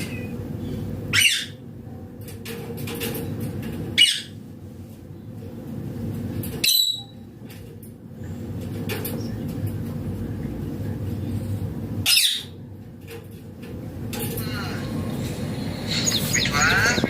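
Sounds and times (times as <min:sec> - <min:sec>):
low background hum: 0:00.0 - 0:17.0
parakeet shrieks: 0:01.1 - 0:01.6.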